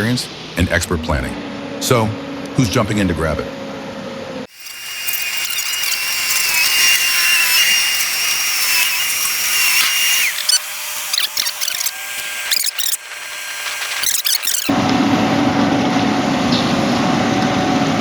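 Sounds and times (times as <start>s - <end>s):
small motor whining: 4.5s - 14.8s
clicks and scrapes: 4.6s - 14.7s.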